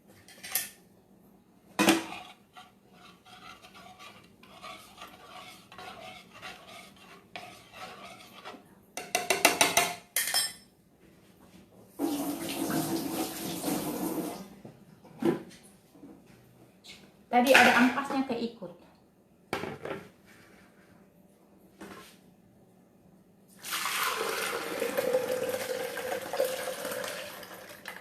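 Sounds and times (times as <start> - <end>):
utensils clinking against dishes: 9.0 - 10.7.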